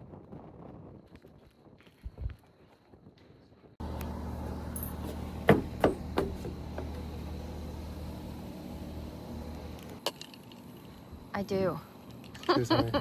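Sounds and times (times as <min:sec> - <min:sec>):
low mechanical hum: 0:03.8 - 0:13.0
sharp knocks: 0:05.4 - 0:06.9.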